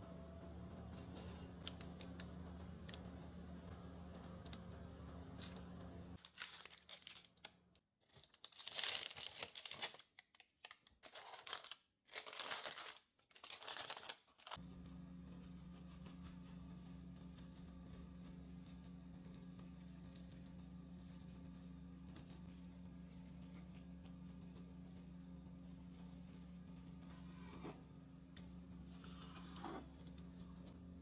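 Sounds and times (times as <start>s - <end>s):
crinkling rustling noise: 4.1s - 14.6s
faint steady hum: 14.6s - 31.0s.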